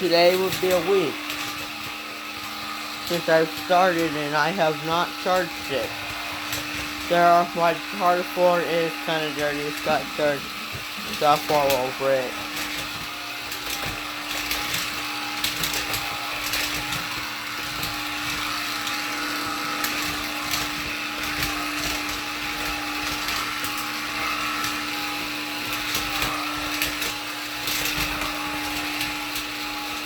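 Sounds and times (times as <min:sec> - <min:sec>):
vacuum cleaner motor humming: 0:00.0 - 0:30.0.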